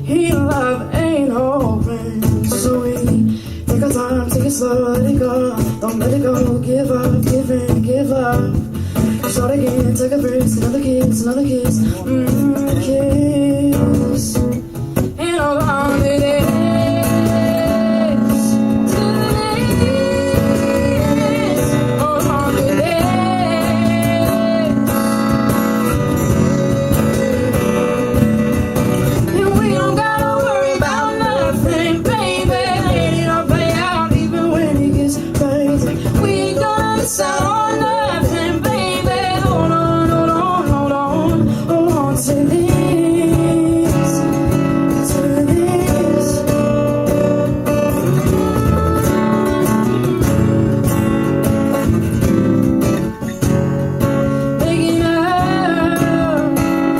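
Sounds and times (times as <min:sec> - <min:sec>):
acoustic guitar playing: 0:00.0 - 0:56.9
person singing: 0:15.2 - 0:46.8, 0:48.1 - 0:51.2, 0:54.6 - 0:56.9.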